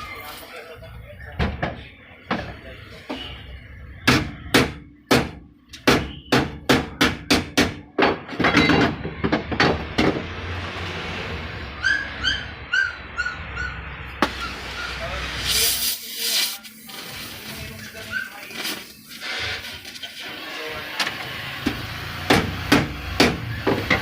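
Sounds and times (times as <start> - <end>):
hammer blows on sheet metal: 4.0 - 10.2.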